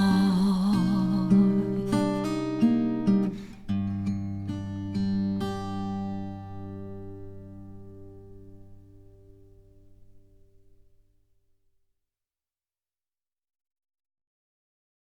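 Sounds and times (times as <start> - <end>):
acoustic guitar notes and chord: 0.0 - 11.0.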